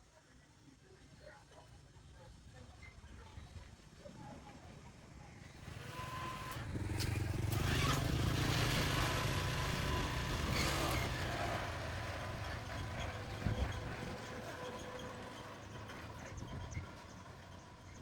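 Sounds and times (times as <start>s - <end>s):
vehicle engine rumbling: 5.5s - 18.0s.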